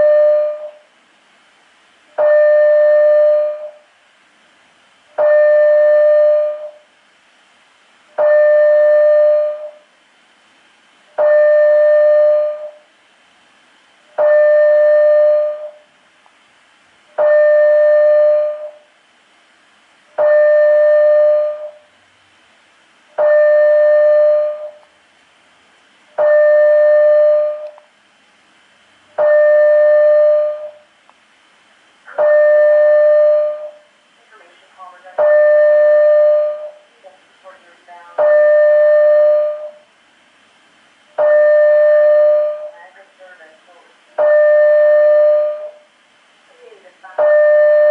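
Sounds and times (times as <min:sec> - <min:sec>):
fire alarm pulsing tone: 0:00.0 - 0:00.9, 0:02.2 - 0:03.9, 0:05.2 - 0:06.9, 0:08.1 - 0:09.9, 0:11.2 - 0:12.9, 0:14.2 - 0:15.9, 0:17.2 - 0:18.9, 0:20.2 - 0:21.9, 0:23.2 - 0:24.8, 0:26.2 - 0:27.8, 0:29.2 - 0:30.9, 0:32.1 - 0:33.9, 0:35.2 - 0:36.9, 0:38.2 - 0:39.9, 0:41.2 - 0:42.8, 0:44.2 - 0:45.9, 0:47.1 - 0:47.9.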